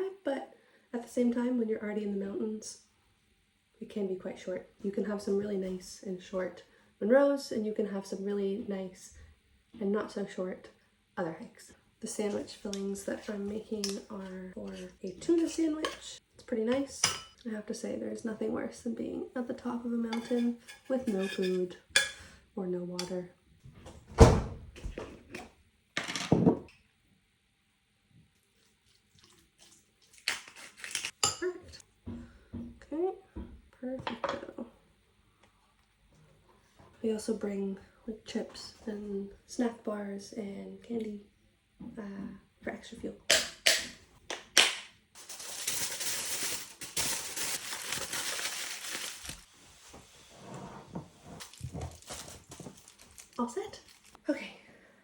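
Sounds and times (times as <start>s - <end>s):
kitchen clattering and rustling: 20.1s - 22.2s, 45.2s - 49.5s, 50.6s - 54.2s.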